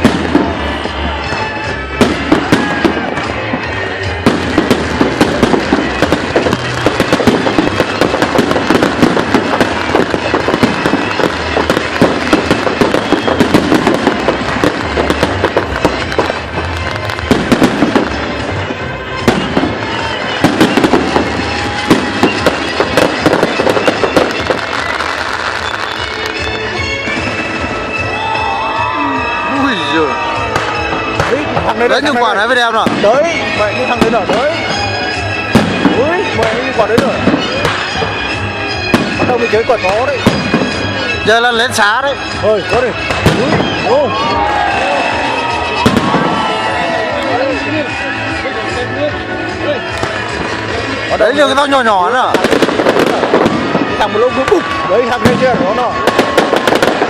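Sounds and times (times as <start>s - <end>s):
fireworks bangs: 0.0s - 57.0s
fireworks crackling and popping: 0.0s - 57.0s.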